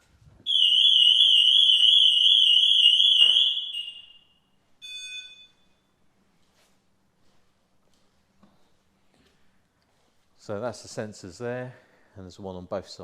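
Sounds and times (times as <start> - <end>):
alarm siren fast warble: 0.5 - 4.2
short beep: 4.8 - 5.9.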